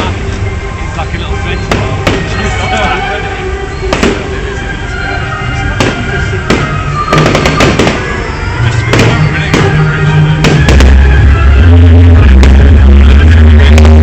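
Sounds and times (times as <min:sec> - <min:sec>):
fireworks banging: 0:01.6 - 0:02.7, 0:03.9 - 0:04.4, 0:05.8 - 0:14.0
loud music with heavy bass: 0:05.0 - 0:14.0.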